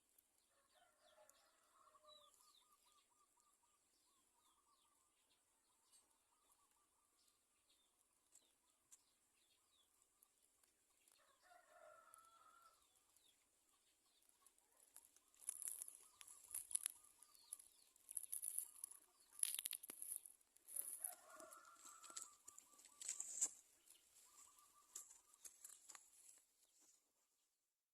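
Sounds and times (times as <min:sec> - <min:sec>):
birds rustling and fluttering: 0:14.8 - 0:26.9.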